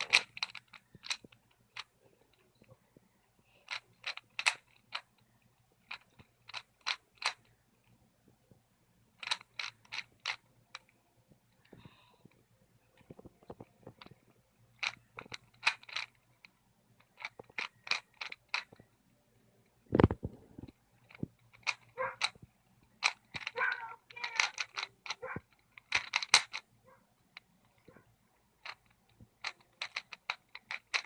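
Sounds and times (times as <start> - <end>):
puzzle cube layers clicking: 0.0 - 2.7, 3.6 - 5.1, 5.8 - 7.5, 9.2 - 11.0, 14.8 - 16.2, 17.0 - 18.9, 19.9 - 26.7, 28.6 - 31.0.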